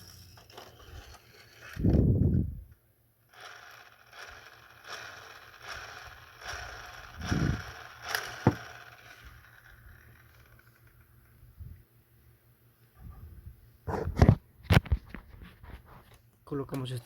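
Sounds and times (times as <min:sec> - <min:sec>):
plastic toy pieces rattling: 0:00.0 - 0:01.9, 0:03.3 - 0:11.0
dull thump: 0:08.4 - 0:08.7.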